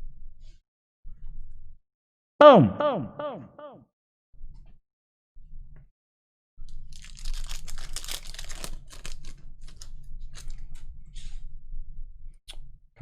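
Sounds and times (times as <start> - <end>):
wrapper ripping and crinkling: 6.7 - 10.6.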